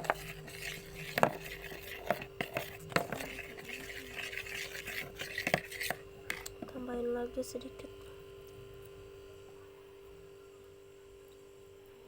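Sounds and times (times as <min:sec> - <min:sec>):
spoon scraping and clicking container: 0:00.0 - 0:06.6.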